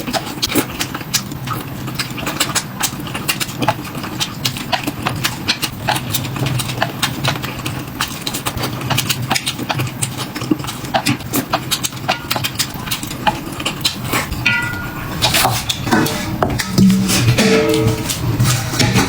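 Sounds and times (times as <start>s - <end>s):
low steady hum: 14.3s - 19.0s
tableware clicking and knocking: 14.5s - 19.0s.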